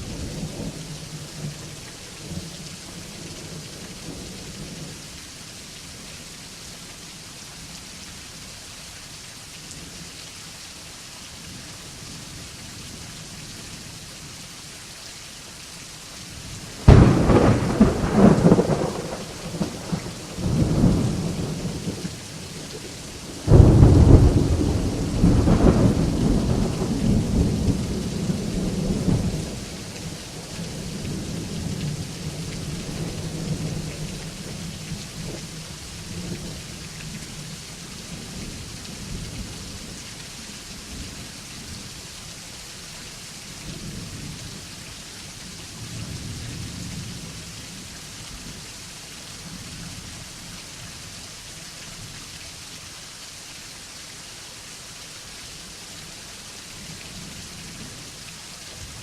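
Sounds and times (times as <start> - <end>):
steady rain falling: 0.0 - 59.0
thunder clap rumbling: 16.8 - 22.0, 23.4 - 29.3.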